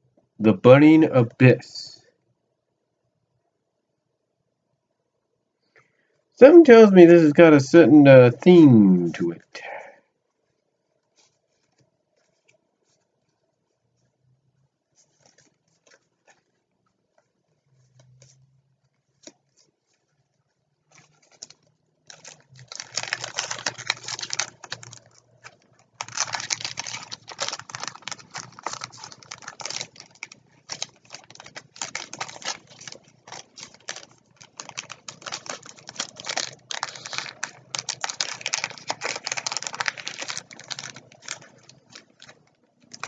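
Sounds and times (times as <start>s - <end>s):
cards and packaging rustling: 10.3s - 43.0s.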